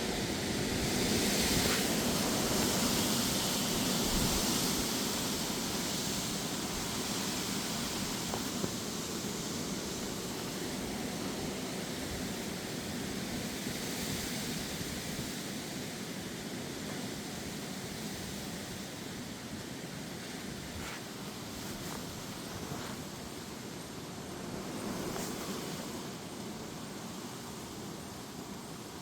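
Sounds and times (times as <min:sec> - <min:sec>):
gusty wind: 0:00.0 - 0:15.7
rain: 0:00.0 - 0:29.0.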